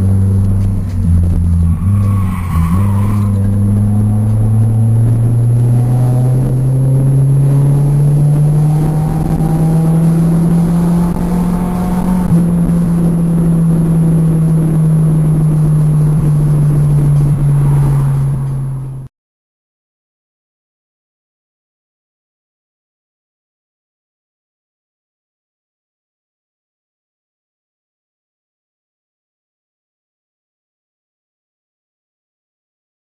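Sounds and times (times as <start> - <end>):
car engine at high revs: 0.0 - 19.1.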